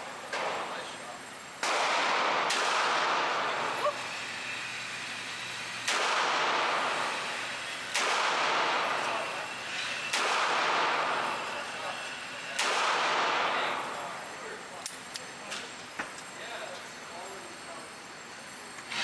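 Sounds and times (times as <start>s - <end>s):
revolver shots with echo: 1.6s - 3.6s, 5.8s - 6.8s, 7.9s - 8.8s, 10.1s - 11.1s, 12.5s - 13.7s.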